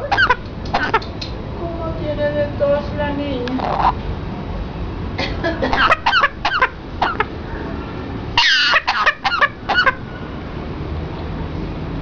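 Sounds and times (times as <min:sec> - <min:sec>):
parrot coughing calls: 0:05.2 - 0:07.3.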